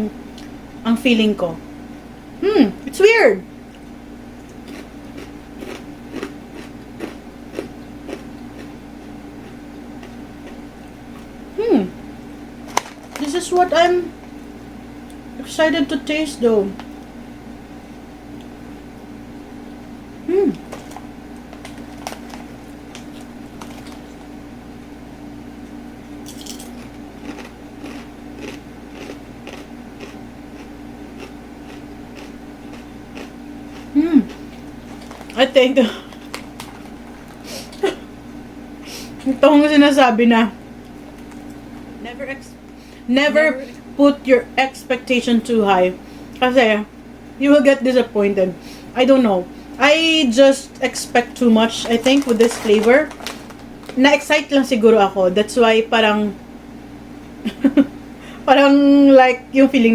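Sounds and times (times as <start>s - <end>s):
person chewing crispy chips: 3.7s - 11.3s, 20.5s - 24.3s, 26.2s - 38.0s, 50.9s - 54.3s.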